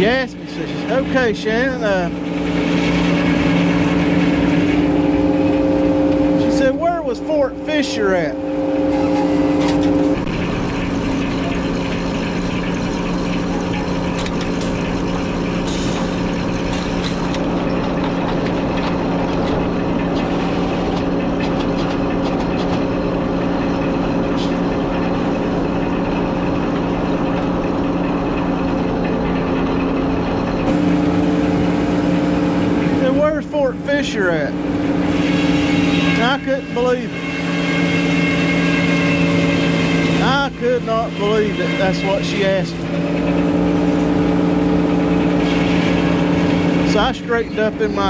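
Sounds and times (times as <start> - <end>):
engine running steadily: 0.0 - 48.0.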